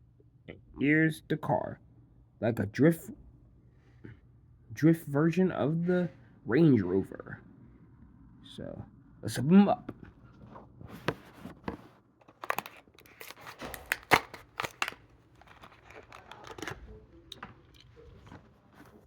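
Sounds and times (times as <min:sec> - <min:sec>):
plastic crinkling: 0:12.2 - 0:19.0
cardboard tearing: 0:12.3 - 0:16.8.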